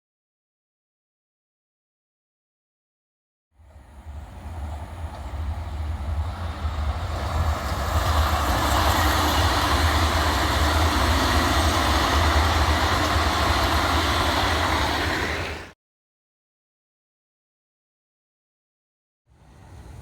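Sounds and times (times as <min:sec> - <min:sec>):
train wheels rolling on track: 0:03.6 - 0:15.7, 0:19.4 - 0:20.0
low rumble of train: 0:03.6 - 0:15.8, 0:19.3 - 0:20.0.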